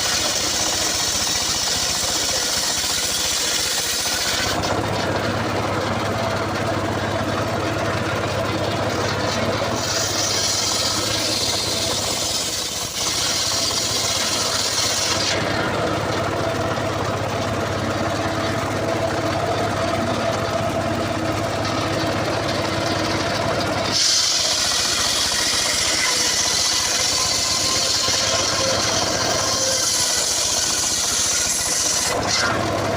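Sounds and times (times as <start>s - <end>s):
saw blade hissing through wood: 0.0s - 4.8s, 9.2s - 15.7s, 23.9s - 32.6s
engine-driven saw running: 0.0s - 32.9s.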